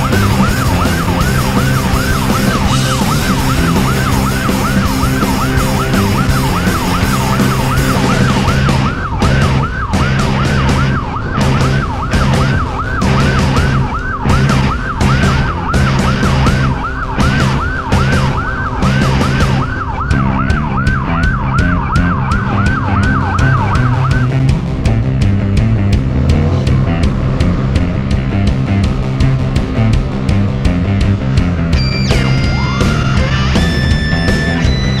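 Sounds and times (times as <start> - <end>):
fast yelping siren: 0.0 - 24.5, 31.7 - 35.0
music with steady beat: 0.0 - 35.0.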